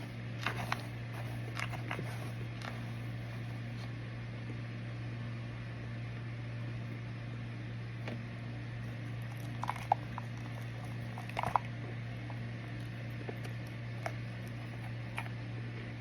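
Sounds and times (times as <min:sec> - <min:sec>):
microwave oven humming: 0:00.0 - 0:16.0
food popping and crackling: 0:09.2 - 0:15.3.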